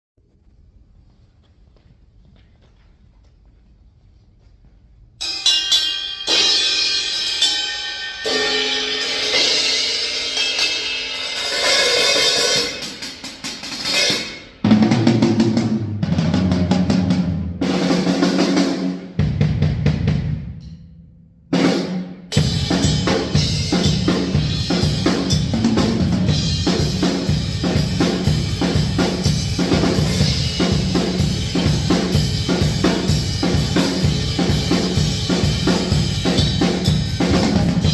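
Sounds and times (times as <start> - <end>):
bright cymbal strikes: 5.2 - 14.6, 22.3 - 37.9
steady beat on drum kit: 5.2 - 20.7, 21.6 - 37.9
heavy low drum hits: 22.4 - 37.9.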